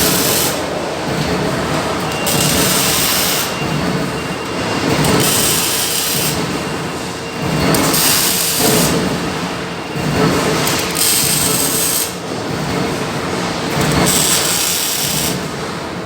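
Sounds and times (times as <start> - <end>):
harsh metalworking hiss: 13.7 - 15.5.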